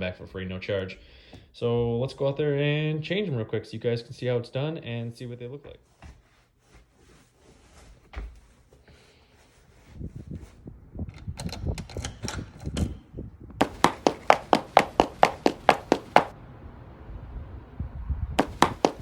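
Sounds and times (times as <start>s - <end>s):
quick footsteps on hard surface: 13.6s - 16.4s, 18.4s - 19.0s.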